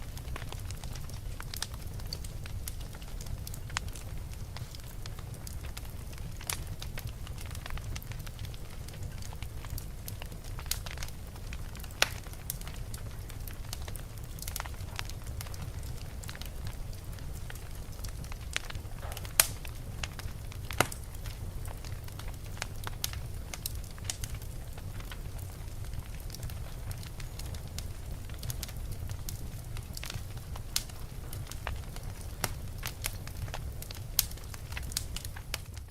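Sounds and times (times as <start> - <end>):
fire low rumble: 0.0 - 35.9
wood fire crackling: 0.0 - 35.9
loud fire pop: 19.0 - 19.6.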